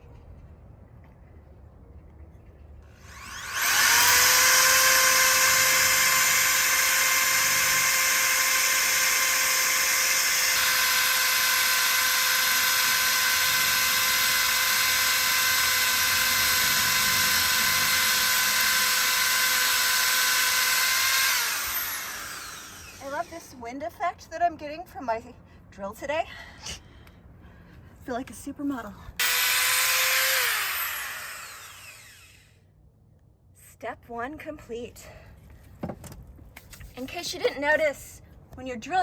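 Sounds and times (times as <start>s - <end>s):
electric drill boring into brick: 3.0s - 23.4s, 29.2s - 32.6s.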